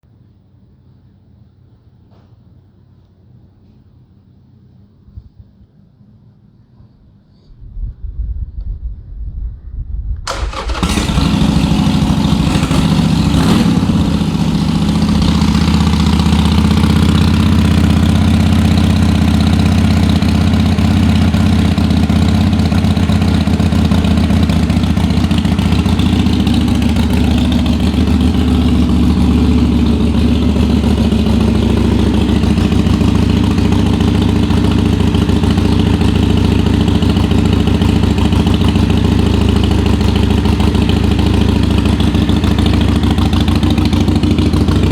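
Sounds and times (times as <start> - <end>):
motorcycle engine starting and idling: 10.2 - 44.9.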